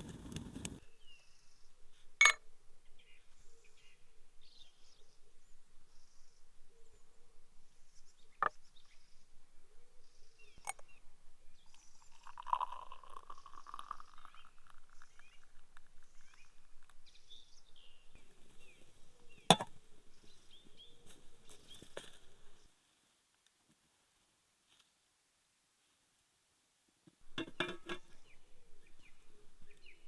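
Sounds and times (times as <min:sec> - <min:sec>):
small birds chirping: 0:09.9 - 0:22.7.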